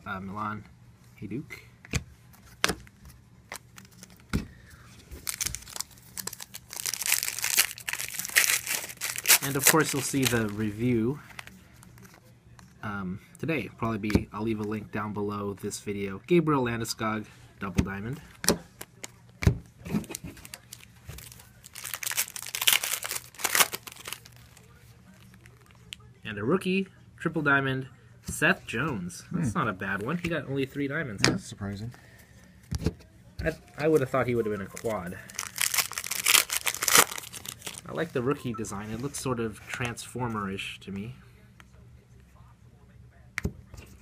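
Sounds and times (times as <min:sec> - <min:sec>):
card pack wrapper tearing: 0:05.2 - 0:10.6, 0:20.0 - 0:24.6, 0:34.0 - 0:37.9.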